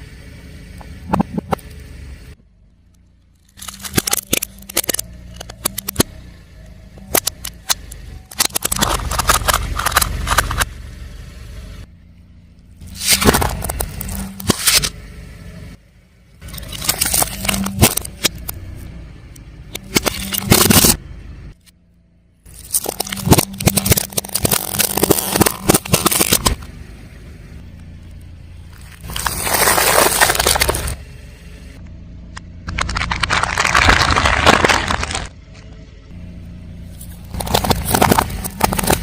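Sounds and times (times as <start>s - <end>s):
car running: 0.0s - 39.0s
tyre crushing crunchy objects: 3.5s - 6.2s, 7.0s - 10.7s, 12.8s - 14.9s, 16.4s - 18.6s, 19.7s - 21.0s, 22.5s - 26.6s, 28.7s - 31.0s, 32.7s - 35.4s, 37.0s - 39.0s.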